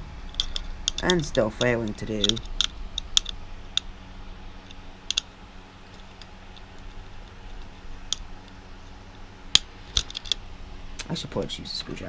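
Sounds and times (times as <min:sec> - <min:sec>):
tool tapping metal screw: 0:00.3 - 0:03.9.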